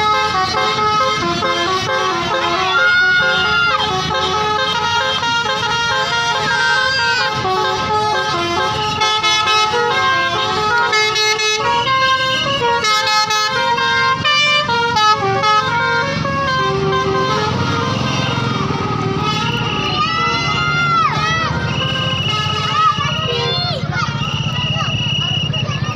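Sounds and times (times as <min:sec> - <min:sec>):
multi-tone bus horn tune: 0:00.0 - 0:24.4.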